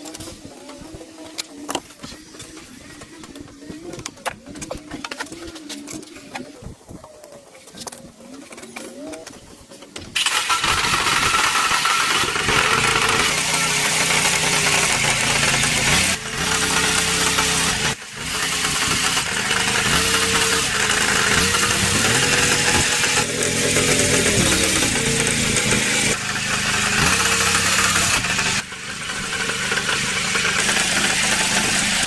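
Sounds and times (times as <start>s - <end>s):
tractor engine starting and revving: 10.2s - 32.0s.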